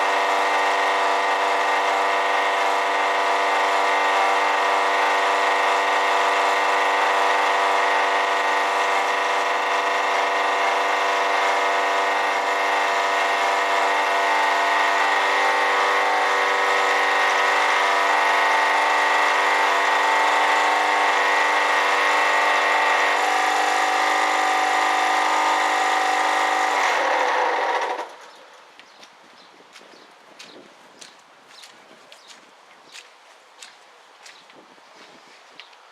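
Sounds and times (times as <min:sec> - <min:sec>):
generator running: 0:00.0 - 0:28.7
alternator noise: 0:00.0 - 0:28.9.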